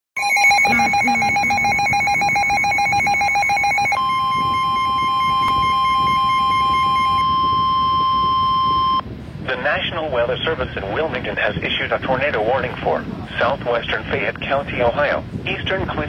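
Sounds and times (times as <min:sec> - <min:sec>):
pulsing electronic beep: 0:00.2 - 0:09.0
steady alarm tone: 0:00.2 - 0:09.0.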